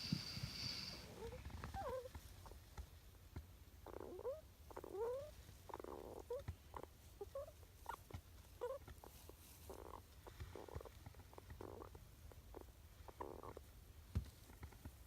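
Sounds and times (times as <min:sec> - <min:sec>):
breathy snore-like sounds: 0:00.0 - 0:01.6.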